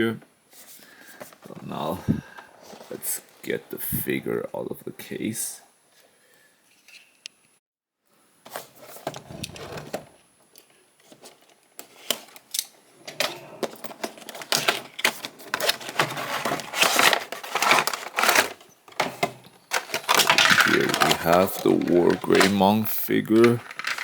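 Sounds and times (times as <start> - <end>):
plastic and cardboard rustling: 0.5 - 4.0, 11.0 - 24.0.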